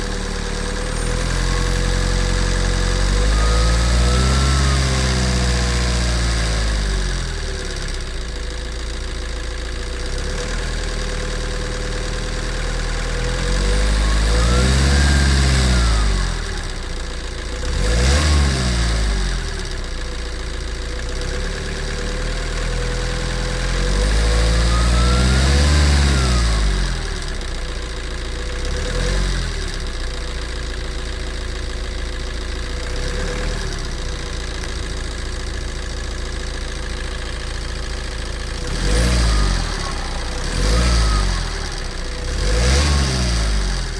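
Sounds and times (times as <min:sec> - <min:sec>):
turbo whistle: 0:00.0 - 0:06.5, 0:13.4 - 0:16.6, 0:24.0 - 0:27.0, 0:38.7 - 0:43.6
diesel engine idling and revving: 0:00.0 - 0:43.9.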